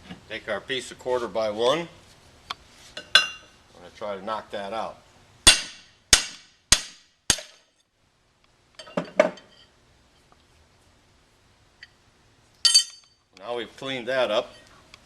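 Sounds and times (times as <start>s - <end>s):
hammer striking steel bar: 5.5s - 7.7s.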